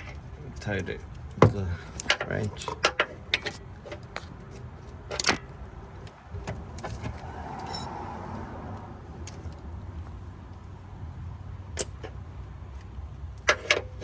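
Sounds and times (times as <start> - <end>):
wrench clinking on metal: 7.6 - 7.9.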